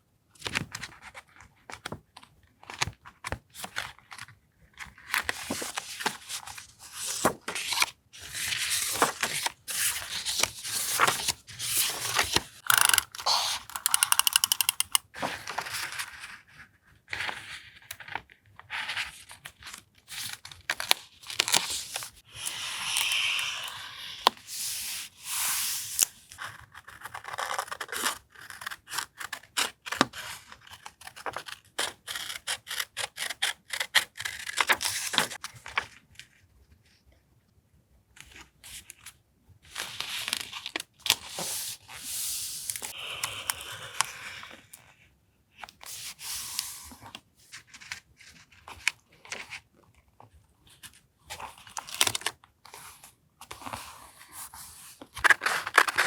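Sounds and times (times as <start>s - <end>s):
paper rustling: 5.2s - 16.1s
paper tearing: 10.0s - 15.0s.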